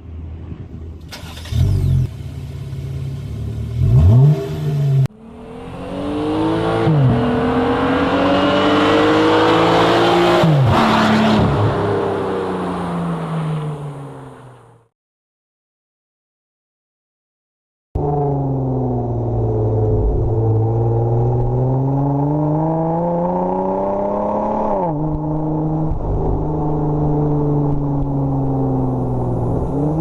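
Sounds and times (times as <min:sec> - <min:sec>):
car engine revving and accelerating: 0:03.3 - 0:14.4, 0:18.0 - 0:30.0.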